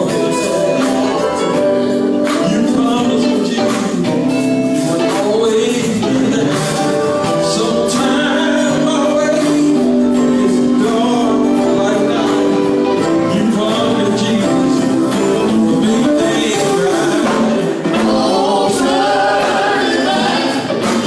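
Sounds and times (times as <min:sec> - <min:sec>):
gospel group singing: 0:00.0 - 0:21.0
instrumental backing: 0:00.0 - 0:21.0
percussion hits: 0:12.1 - 0:21.0.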